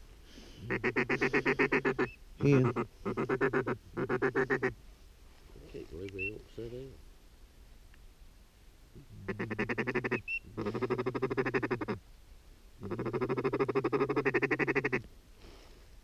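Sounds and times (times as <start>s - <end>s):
duck call rapid notes: 0.7s - 4.7s.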